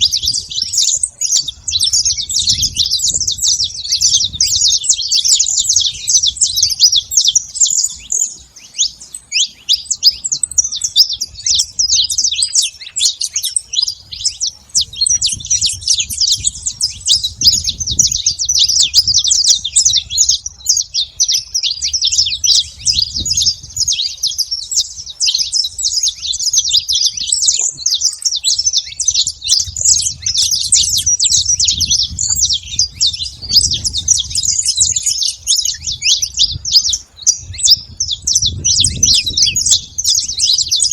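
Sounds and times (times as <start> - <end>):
finches chirping: 0.0 - 40.9.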